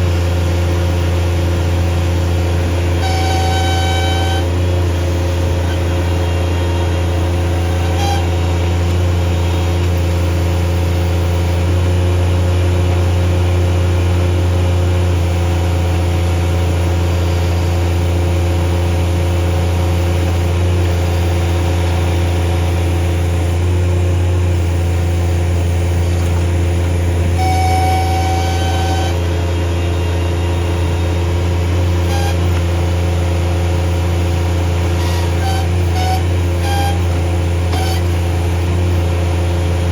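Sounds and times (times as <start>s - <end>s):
loader engine running: 0.0s - 39.9s
high hydraulic squeal: 2.9s - 4.6s, 5.6s - 9.8s, 27.2s - 32.6s, 34.8s - 38.4s.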